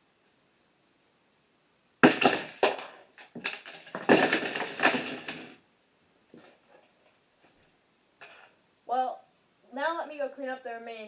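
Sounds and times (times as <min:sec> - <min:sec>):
loose bricks clattering: 0:02.0 - 0:05.6
plastic bricks crashing: 0:02.0 - 0:05.6.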